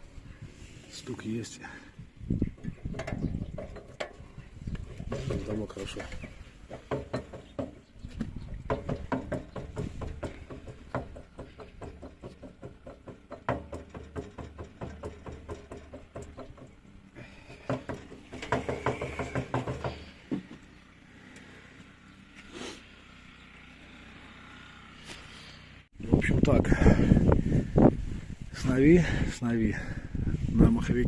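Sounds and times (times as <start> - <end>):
diesel engine knocking: 6.7 - 20.2.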